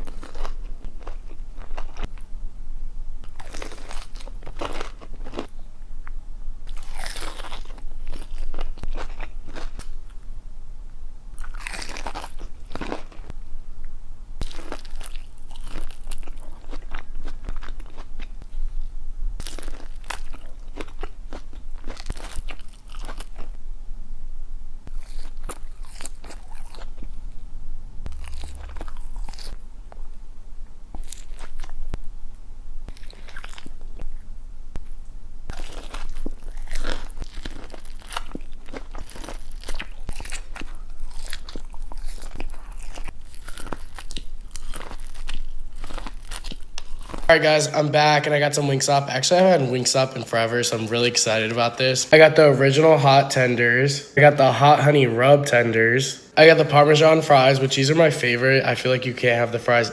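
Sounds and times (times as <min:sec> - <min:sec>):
crunching fried chicken: 0:00.0 - 0:02.3, 0:03.2 - 0:05.6, 0:06.6 - 0:10.2, 0:11.3 - 0:13.4, 0:14.4 - 0:18.6, 0:19.4 - 0:23.6, 0:24.9 - 0:27.2, 0:28.0 - 0:30.0, 0:30.9 - 0:32.0, 0:32.9 - 0:34.1, 0:35.5 - 0:51.7.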